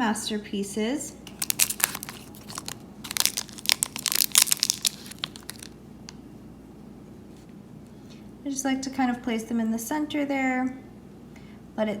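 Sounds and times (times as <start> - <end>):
foil wrappers crinkling and tearing: 1.3 - 5.8.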